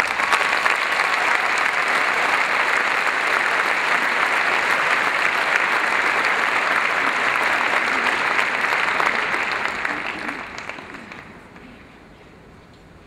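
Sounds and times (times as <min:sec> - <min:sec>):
crowd applause: 0:00.0 - 0:11.9.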